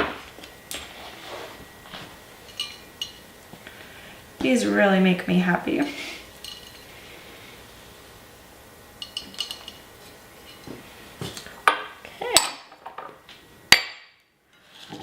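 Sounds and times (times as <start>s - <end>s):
dishes and utensils clinking: 2.4s - 3.2s, 6.4s - 6.9s, 9.0s - 9.8s.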